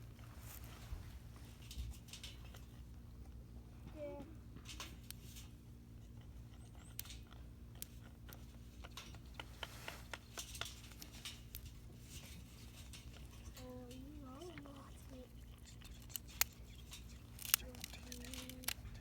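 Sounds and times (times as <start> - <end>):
handling rustles: 0.0 - 2.9, 8.5 - 19.0
low steady hum: 0.0 - 19.0.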